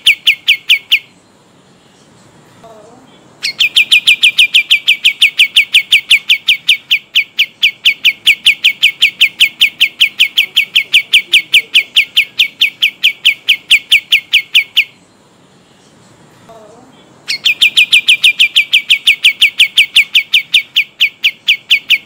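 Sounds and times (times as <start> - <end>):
bird whistling: 0.0 - 1.2, 3.4 - 15.0, 17.3 - 22.0.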